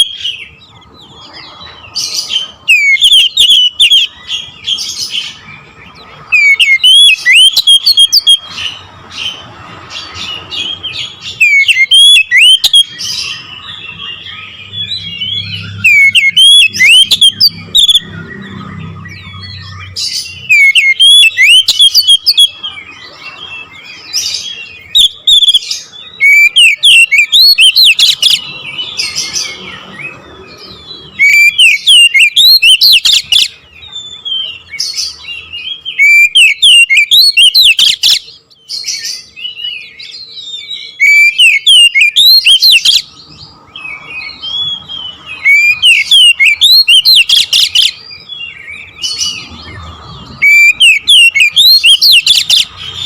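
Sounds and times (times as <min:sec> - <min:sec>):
bird singing whistles and chirps: 0:00.0 - 0:09.4, 0:10.1 - 0:53.0.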